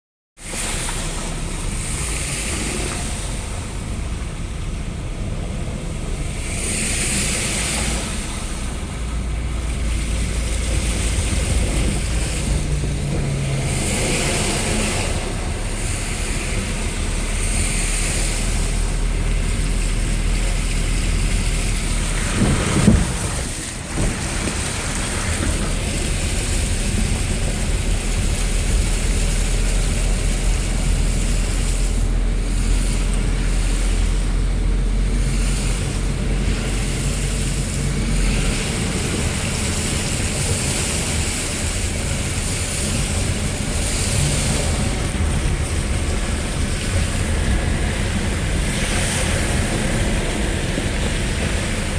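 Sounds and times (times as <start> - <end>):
short loud rumble: 0.4 - 34.2
heavy rain: 0.4 - 51.9
wind buffeting microphone: 1.1 - 51.9.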